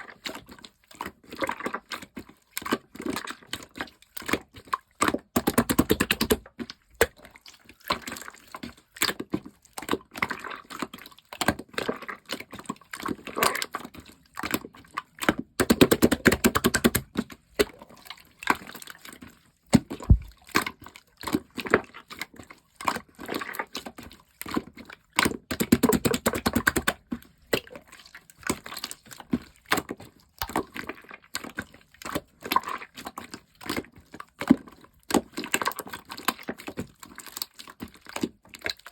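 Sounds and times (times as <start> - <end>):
slime squeezed with wet pops: 5.4 - 7.2, 15.6 - 17.8, 19.8 - 20.8, 25.3 - 27.8.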